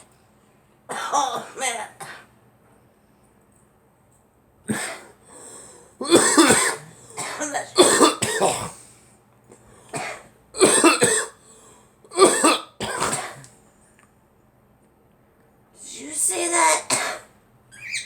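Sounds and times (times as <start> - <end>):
girl coughing: 0.9 - 2.3, 4.7 - 5.2, 6.0 - 8.8, 10.0 - 11.4, 12.1 - 13.5, 16.5 - 17.3.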